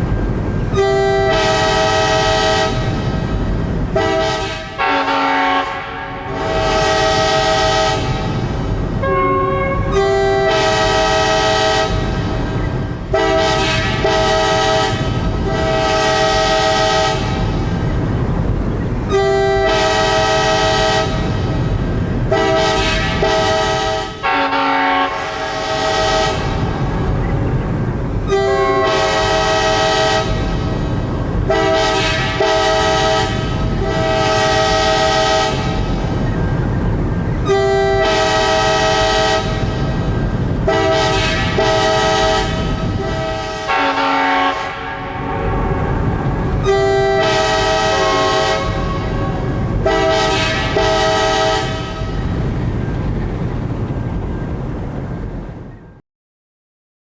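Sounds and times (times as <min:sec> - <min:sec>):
locomotive air horn chord blasts: 0:00.7 - 0:03.1, 0:03.7 - 0:17.8, 0:19.1 - 0:27.2, 0:28.3 - 0:36.2, 0:37.4 - 0:52.7
steady low rumble: 0:44.7 - 0:47.2.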